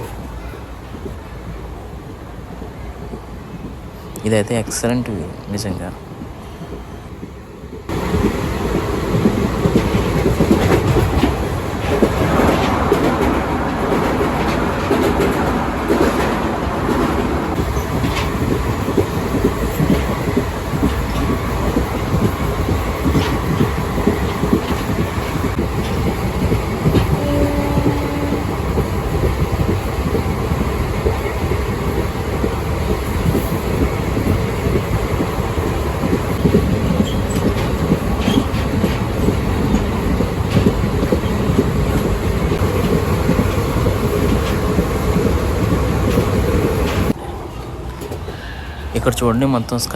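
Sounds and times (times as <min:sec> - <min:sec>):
train rumbling: 0:00.0 - 0:49.9
train wheels clicking over rail joints: 0:06.2 - 0:48.5.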